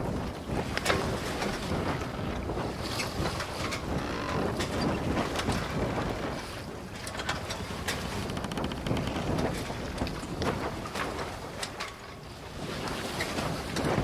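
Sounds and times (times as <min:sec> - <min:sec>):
low wind buffeting: 0:00.0 - 0:14.0
sail flaps: 0:00.0 - 0:14.0
water splashes: 0:00.0 - 0:14.0
wind and water rushing along hull: 0:00.0 - 0:14.0
short creaks: 0:01.4 - 0:10.3.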